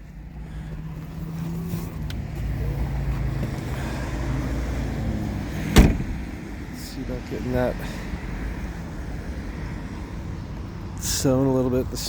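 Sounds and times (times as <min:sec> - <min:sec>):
car engine idling: 0:00.0 - 0:11.8
sharp thump: 0:05.7 - 0:06.4.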